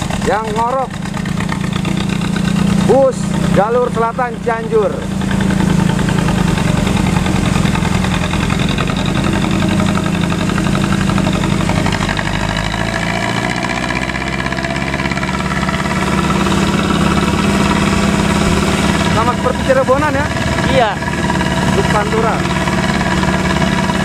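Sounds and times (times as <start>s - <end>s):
bus diesel engine rumbling: 0.0s - 24.0s.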